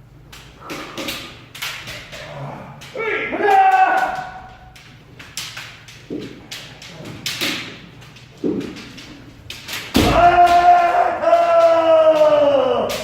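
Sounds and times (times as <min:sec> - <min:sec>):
bamboo swords clacking: 0:00.0 - 0:13.0
footwork on floor: 0:00.0 - 0:13.0
person shouting: 0:03.0 - 0:04.6, 0:10.0 - 0:13.0.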